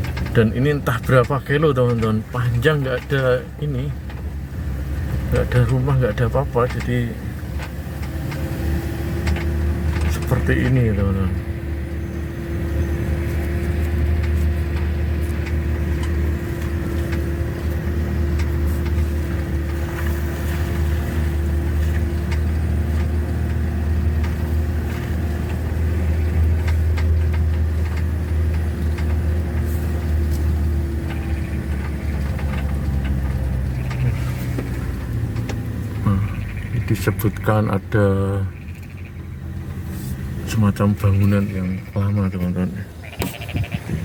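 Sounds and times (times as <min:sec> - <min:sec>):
engine and road drone: 0:00.0 - 0:44.0.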